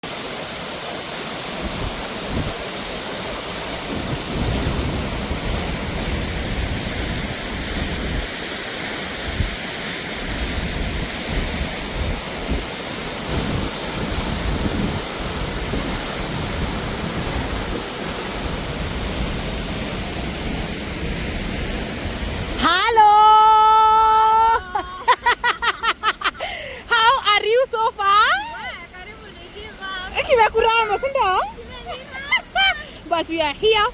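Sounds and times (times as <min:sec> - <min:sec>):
waterfall roaring: 0:00.0 - 0:33.9
wind buffeting microphone: 0:01.6 - 0:02.8, 0:03.4 - 0:08.4, 0:10.2 - 0:20.6.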